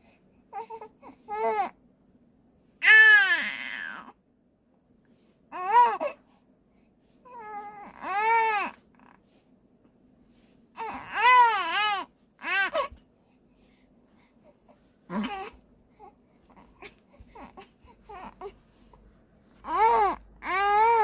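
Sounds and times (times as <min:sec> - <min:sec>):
newborn baby crying: 0:02.8 - 0:04.2, 0:05.5 - 0:06.2, 0:07.3 - 0:09.1, 0:10.8 - 0:13.0, 0:15.1 - 0:18.6, 0:19.6 - 0:21.0.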